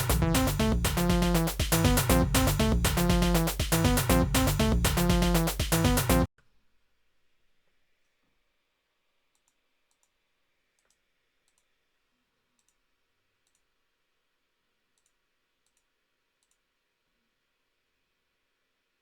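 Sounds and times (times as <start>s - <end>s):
faint computer mouse clicks: 10.8s - 11.7s, 12.6s - 12.8s, 13.4s - 13.7s, 15.0s - 16.6s.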